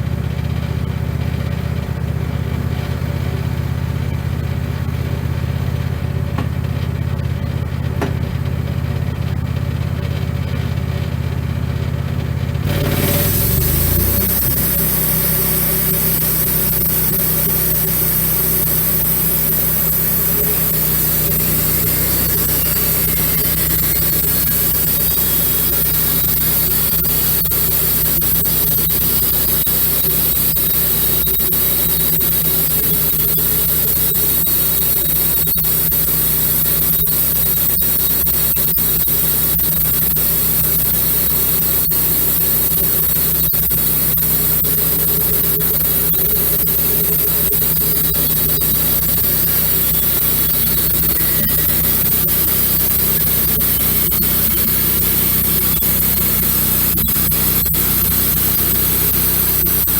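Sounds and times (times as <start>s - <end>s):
bandsaw sawmill engine: 12.5s - 59.9s
high hiss of sawing: 12.7s - 59.9s.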